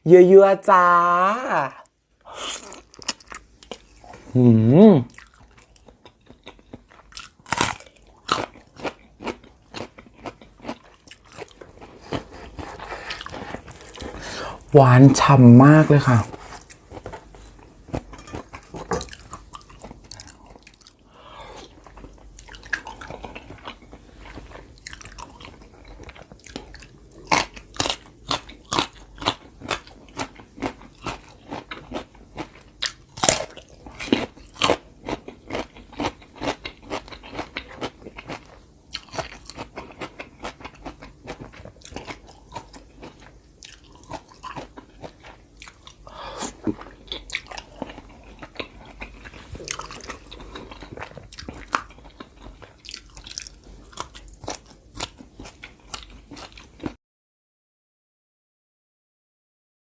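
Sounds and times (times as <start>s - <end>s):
person chewing crunchy food: 2.3s - 4.4s, 5.1s - 14.7s, 16.0s - 57.0s.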